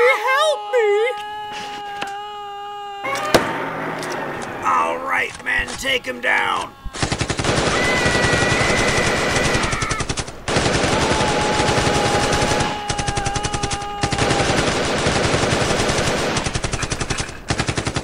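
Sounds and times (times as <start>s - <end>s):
steady high tone: 3.1s - 6.9s
rapid machine-gun fire: 7.0s - 18.0s.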